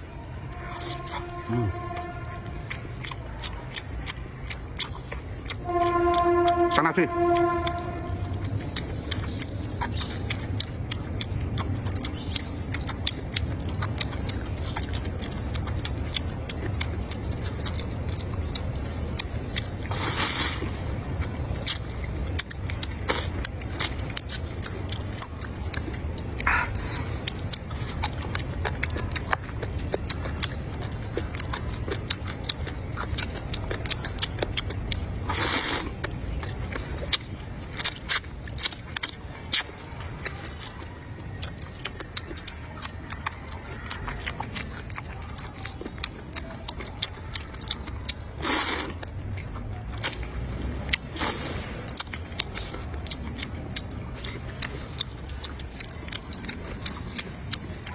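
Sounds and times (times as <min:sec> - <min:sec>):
chewing and crunching food: 0:00.0 - 0:57.9.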